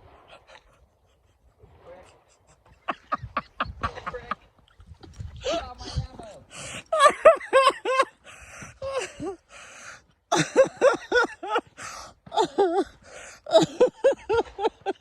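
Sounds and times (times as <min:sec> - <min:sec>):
person laughing hard: 0:02.5 - 0:04.4, 0:06.9 - 0:09.4, 0:10.3 - 0:15.0
wheezy gasping in-breaths: 0:06.5 - 0:06.9, 0:08.2 - 0:10.1, 0:11.7 - 0:13.6.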